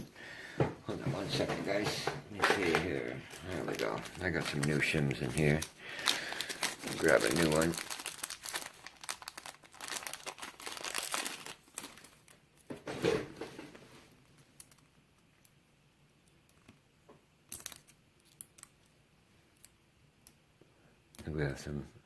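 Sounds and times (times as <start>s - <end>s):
packet crinkling and rustling: 0.9s - 13.9s.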